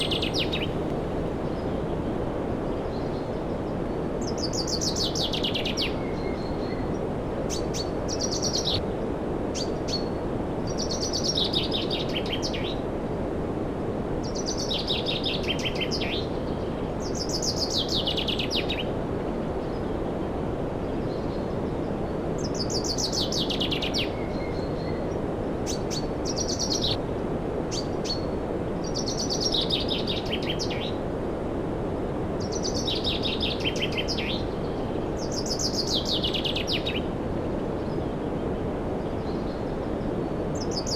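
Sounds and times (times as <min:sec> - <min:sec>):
bird buzzy trills: 0:00.0 - 0:00.9.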